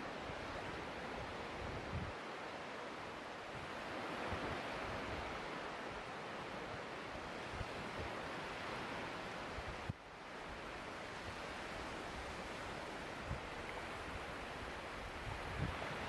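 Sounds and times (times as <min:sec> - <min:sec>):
surf washing onto beach: 0:00.0 - 0:16.0
wind rumbling on microphone: 0:01.4 - 0:02.2, 0:11.3 - 0:16.0.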